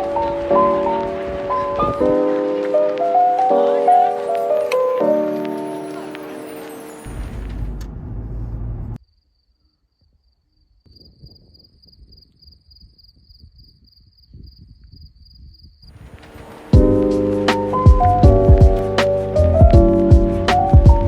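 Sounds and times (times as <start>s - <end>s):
low rumble: 7.1s - 9.0s.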